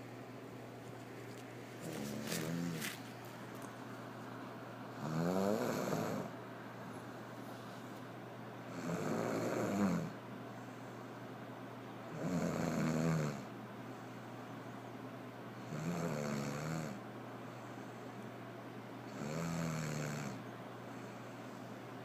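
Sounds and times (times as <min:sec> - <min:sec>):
person snoring: 0:01.8 - 0:03.0, 0:05.0 - 0:06.3, 0:08.7 - 0:10.2, 0:12.2 - 0:13.5, 0:19.1 - 0:20.4.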